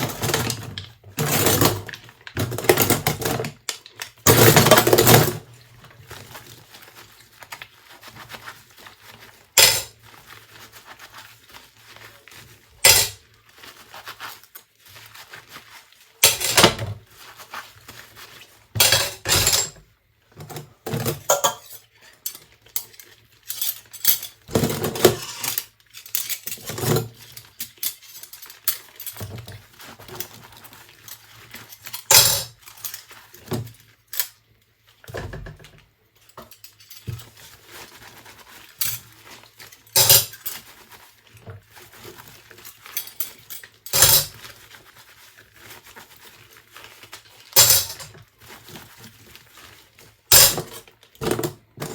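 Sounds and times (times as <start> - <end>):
dishes and cutlery clinking: 0.0 - 5.4, 9.6 - 9.9, 12.8 - 13.2, 16.2 - 17.0, 18.8 - 19.8, 20.4 - 29.6, 31.8 - 33.1, 39.9 - 40.7, 42.8 - 44.5, 47.6 - 48.2, 50.3 - 51.9
scrubbing and rinsing: 0.0 - 51.9.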